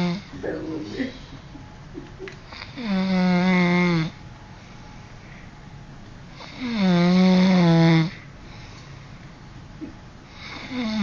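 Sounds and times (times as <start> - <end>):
man snoring: 0.0 - 0.3, 2.5 - 4.2, 6.4 - 8.2, 10.4 - 11.0
quiet breathing: 4.5 - 6.8, 8.0 - 9.6.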